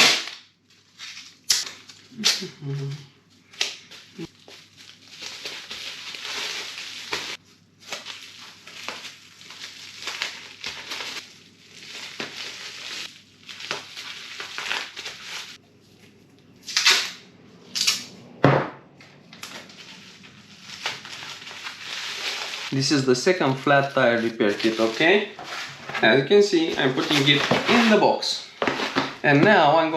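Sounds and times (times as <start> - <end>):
packing materials crinkling: 3.4 - 15.6, 19.4 - 29.9.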